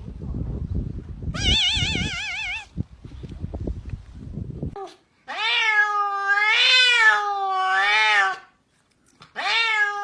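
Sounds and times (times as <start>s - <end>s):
cat meowing: 1.4s - 2.7s, 4.8s - 8.6s, 9.4s - 10.0s.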